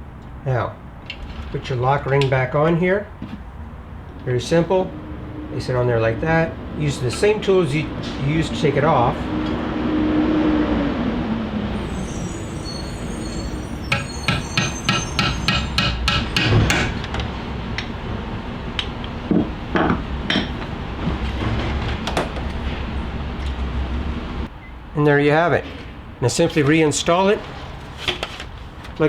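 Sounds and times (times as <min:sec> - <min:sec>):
low hum: 0:03.4 - 0:24.5
metal knocks: 0:13.8 - 0:18.0, 0:18.8 - 0:23.7.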